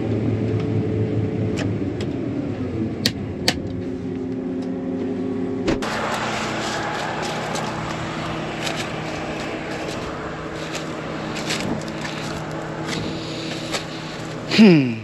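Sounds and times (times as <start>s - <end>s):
loud sound falling in pitch: 5.8s - 13.2s
combine engine idling: 5.8s - 14.8s
rustles and clicks: 8.6s - 14.4s.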